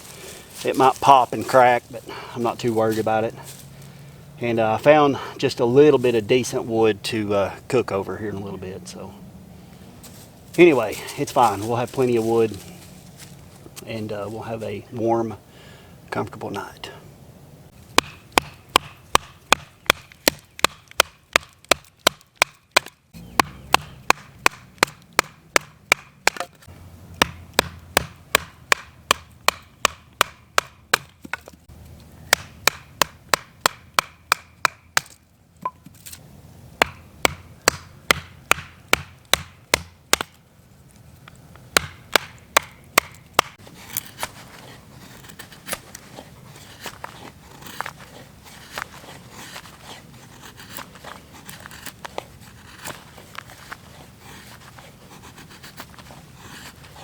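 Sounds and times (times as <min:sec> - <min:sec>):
axe chopping firewood: 0:17.7 - 0:36.2, 0:36.8 - 0:40.4, 0:41.6 - 0:54.9.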